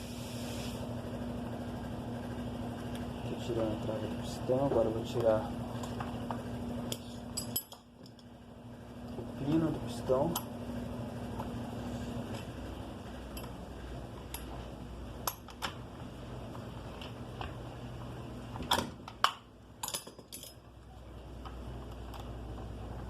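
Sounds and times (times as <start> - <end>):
metal engine parts clinking: 6.9 - 8.3, 19.8 - 20.7.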